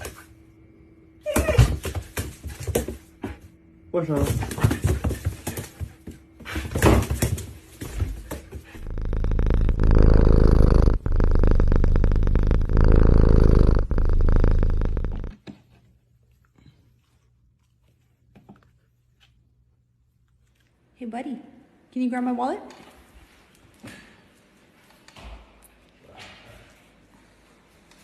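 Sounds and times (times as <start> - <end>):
cat purring loudly: 8.6 - 15.4.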